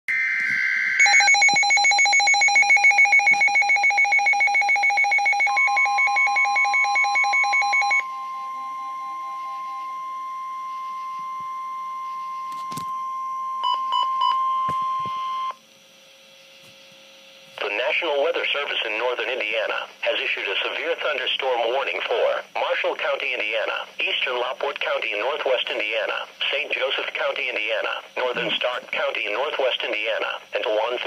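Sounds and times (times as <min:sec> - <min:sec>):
fast pulsing alarm beep: 0:00.1 - 0:15.6
steady warning alarm tone: 0:00.1 - 0:15.6
short beeps: 0:00.3 - 0:15.6.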